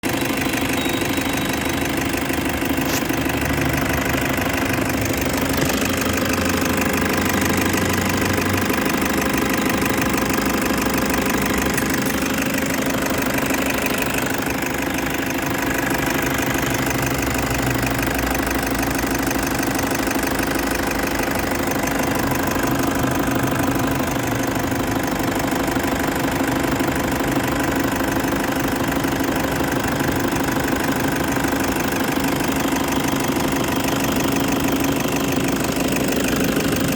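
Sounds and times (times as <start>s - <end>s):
engine idling with knocking clatter: 0.0s - 36.9s.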